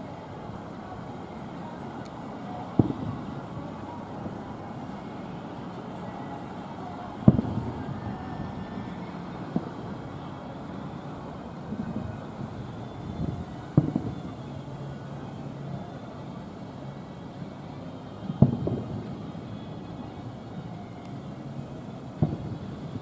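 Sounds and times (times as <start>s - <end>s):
faint fireworks pops: 0.0s - 23.0s
distant fireworks booms: 2.4s - 6.1s, 7.1s - 14.8s, 18.3s - 20.0s, 22.2s - 23.0s.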